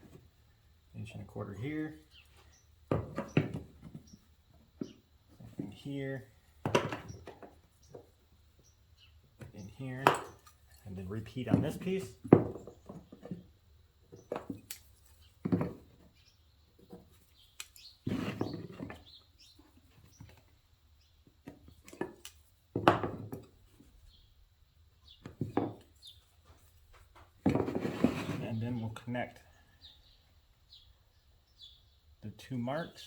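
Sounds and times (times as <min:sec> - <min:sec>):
wood knocks and clatters on workbench: 0:02.9 - 0:04.2, 0:06.6 - 0:08.1, 0:11.5 - 0:13.5, 0:15.4 - 0:16.1, 0:18.0 - 0:19.1, 0:21.4 - 0:23.6, 0:25.2 - 0:25.9, 0:27.0 - 0:28.4
scrape on workbench: 0:18.1 - 0:18.6, 0:27.6 - 0:28.4.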